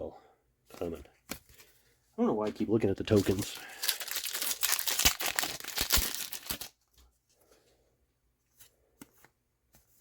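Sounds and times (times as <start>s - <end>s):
foil wrapper crinkling and tearing: 3.1s - 6.8s.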